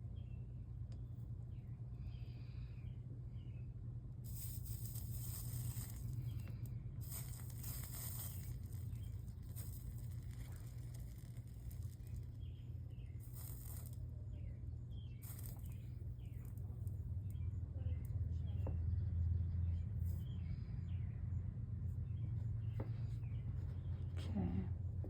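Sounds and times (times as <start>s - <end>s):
steady low hum: 0.0s - 25.0s
solder sizzling under iron: 4.2s - 14.2s, 15.0s - 17.6s
faint bird chirps: 4.4s - 24.2s.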